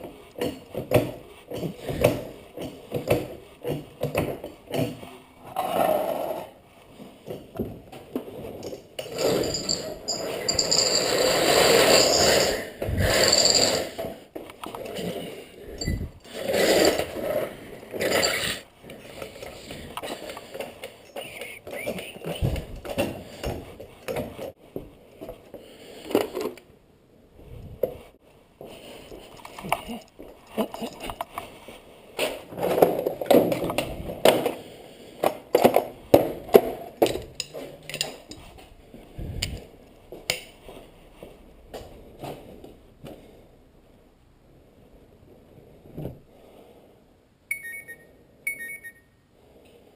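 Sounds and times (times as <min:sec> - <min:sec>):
metallic clanks of tools and parts: 0:08.6 - 0:11.2, 0:17.9 - 0:18.6, 0:29.4 - 0:31.3, 0:36.6 - 0:38.5
metallic clinks: 0:08.6 - 0:11.2.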